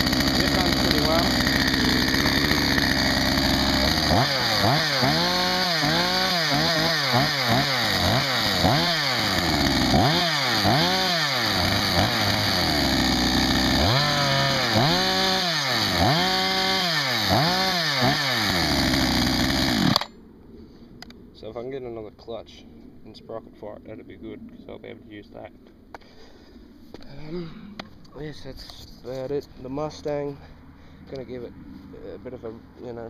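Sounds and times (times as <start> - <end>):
chainsaw idling and revving: 0.0 - 20.1.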